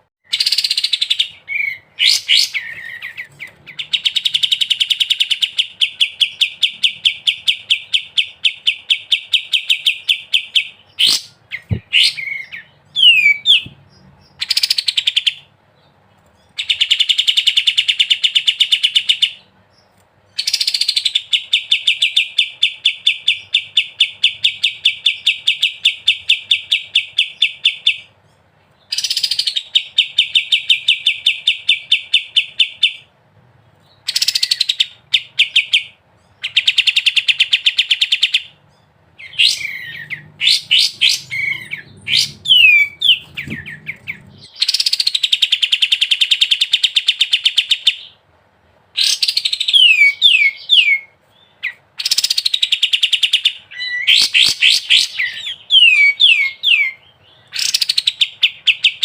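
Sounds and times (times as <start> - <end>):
songbird singing rapid high notes: 34.0 - 48.1
bird sweeping notes: 39.2 - 45.0.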